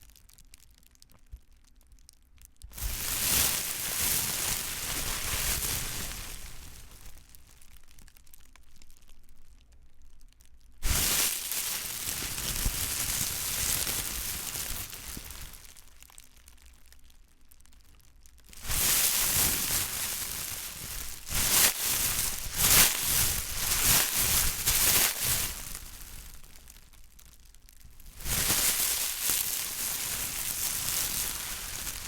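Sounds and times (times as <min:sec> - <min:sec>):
plastic bag crinkling: 0:02.7 - 0:08.1, 0:10.8 - 0:16.3, 0:18.5 - 0:32.0.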